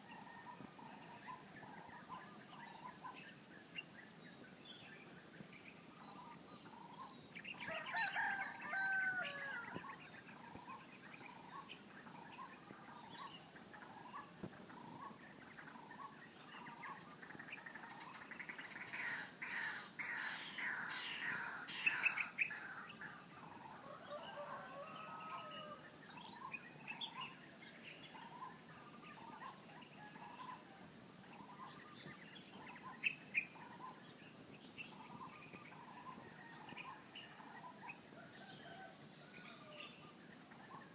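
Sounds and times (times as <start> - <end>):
roosters crowing: 7.6 - 9.8, 23.7 - 25.9.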